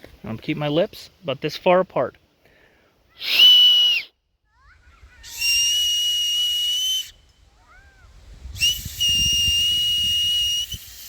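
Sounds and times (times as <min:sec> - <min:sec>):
high-pitched whistle: 0:03.2 - 0:04.2, 0:05.2 - 0:07.5, 0:08.5 - 0:11.0.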